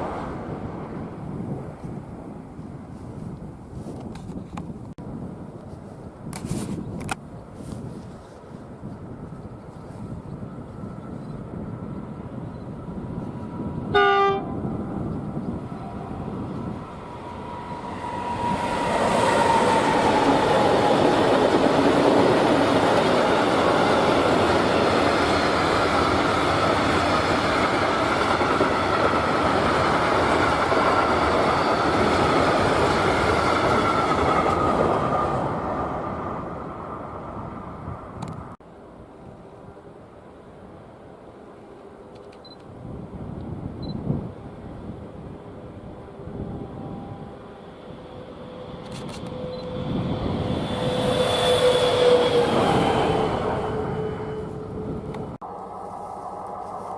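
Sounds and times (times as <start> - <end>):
freight train passing on rails: 0.0 - 3.7, 5.0 - 56.9
train horn blast: 13.9 - 14.6, 50.7 - 52.9, 53.5 - 56.8.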